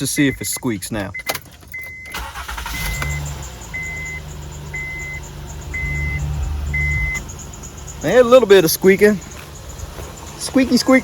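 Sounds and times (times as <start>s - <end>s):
car engine starting and idling: 0.0s - 11.0s
dashboard warning chime beeping: 0.0s - 11.0s.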